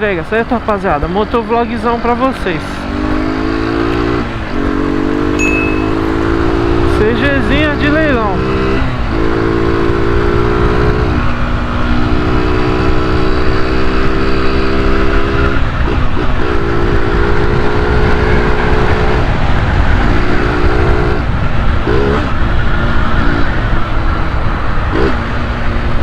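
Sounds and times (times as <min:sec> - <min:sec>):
motorcycle engine growling: 0:00.0 - 0:26.0
wind rush on microphone: 0:06.3 - 0:26.0.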